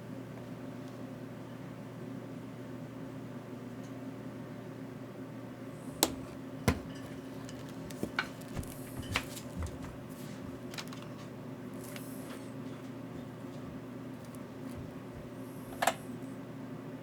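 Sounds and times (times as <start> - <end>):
steady low hum: 5.5 - 17.0
objects clicking on a workbench: 15.7 - 16.0.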